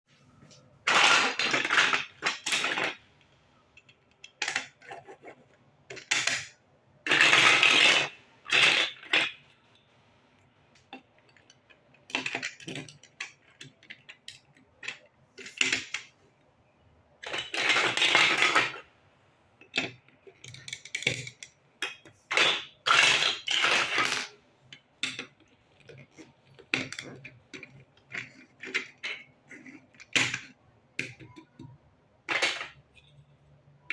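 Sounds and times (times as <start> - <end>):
plastic blocks clattering: 0.8 - 3.0, 5.9 - 9.5, 10.9 - 16.1, 17.2 - 18.8, 19.6 - 33.1.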